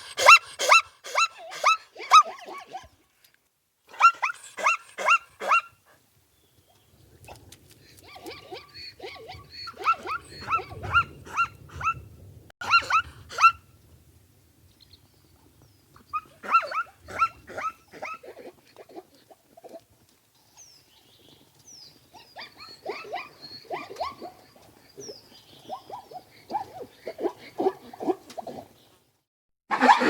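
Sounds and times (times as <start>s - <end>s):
zebra yelping barks: 0.0s - 2.9s, 3.9s - 5.8s, 8.2s - 12.0s, 12.6s - 13.6s, 16.1s - 19.1s, 22.2s - 24.4s.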